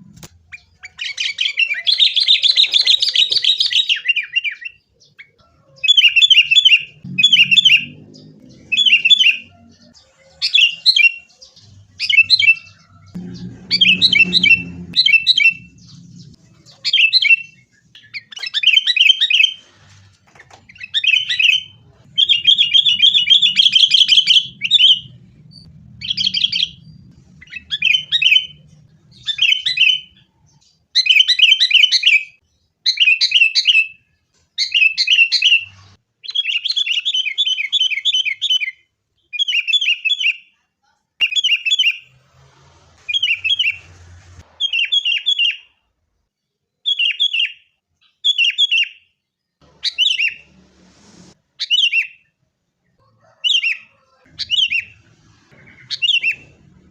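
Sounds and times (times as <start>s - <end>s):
bulbuls calling: 0.0s - 19.6s, 20.3s - 30.4s, 53.4s - 56.9s
bird chattering: 5.0s - 19.6s, 20.6s - 30.2s, 53.6s - 56.8s.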